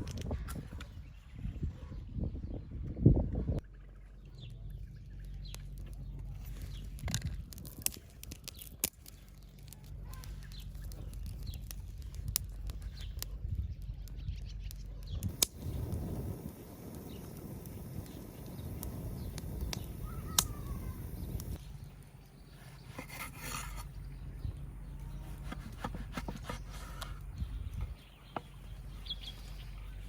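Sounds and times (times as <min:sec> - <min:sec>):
birds chirping: 0:08.4 - 0:30.0.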